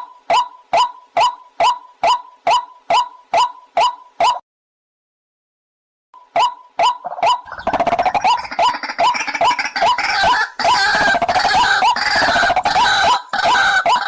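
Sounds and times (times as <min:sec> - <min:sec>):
waterhen calling: 0:06.4 - 0:14.0.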